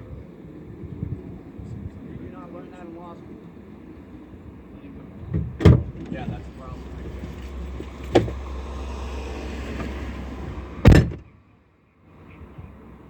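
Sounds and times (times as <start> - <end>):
traffic rumble: 0.0 - 13.0
car door slamming: 5.2 - 6.5, 8.0 - 8.5, 10.8 - 11.4
thump: 5.3 - 6.1, 8.1 - 8.4, 10.8 - 11.3.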